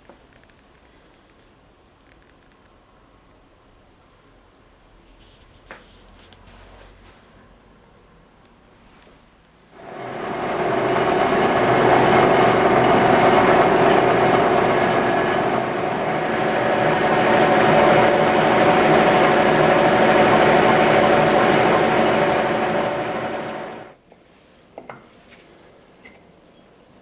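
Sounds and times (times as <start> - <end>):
grinder whirring: 9.8 - 23.9.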